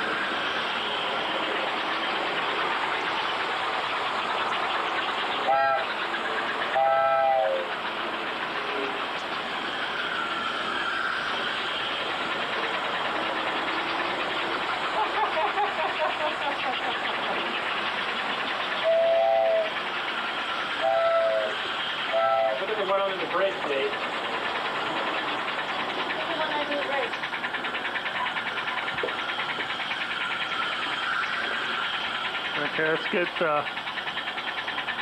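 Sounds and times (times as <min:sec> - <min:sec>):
model train running: 0:00.0 - 0:35.0
train whistle blasts: 0:05.4 - 0:06.0, 0:06.7 - 0:07.7, 0:18.8 - 0:19.8, 0:20.8 - 0:22.7.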